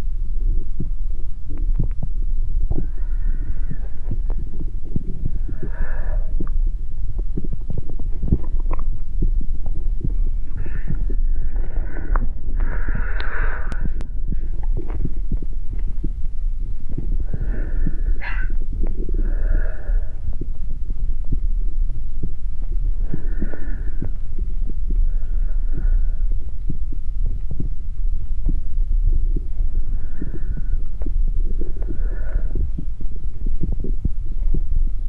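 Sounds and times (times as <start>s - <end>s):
low body rumble with thumps: 0.0s - 35.0s
breathy hisses: 2.8s - 7.0s, 10.4s - 14.6s, 17.0s - 20.7s, 23.0s - 24.5s, 29.6s - 33.1s.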